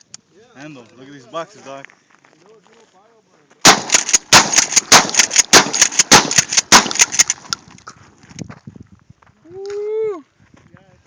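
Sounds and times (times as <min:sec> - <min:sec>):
shotgun firing rapidly: 0:03.6 - 0:07.5.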